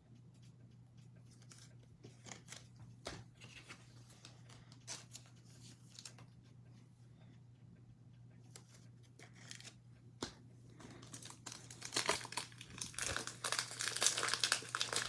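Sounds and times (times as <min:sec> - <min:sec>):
trading cards clicking and rustling: 0:09.2 - 0:15.0.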